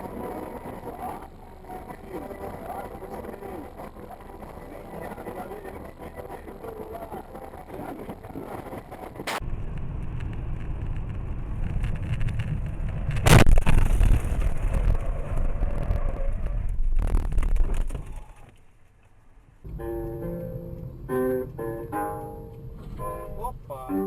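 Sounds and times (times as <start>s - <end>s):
vehicle rumble: 0.0s - 18.4s, 19.7s - 24.0s
loud bang: 13.2s - 15.8s.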